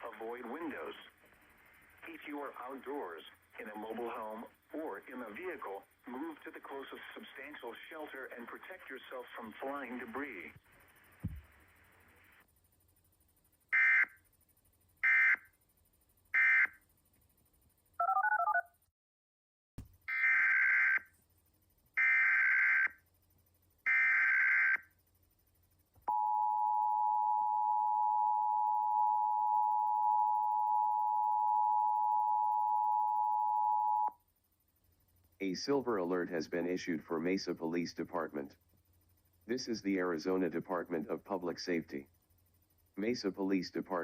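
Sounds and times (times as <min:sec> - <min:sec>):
buzzy data bursts: 0:13.7 - 0:15.5, 0:16.2 - 0:16.8.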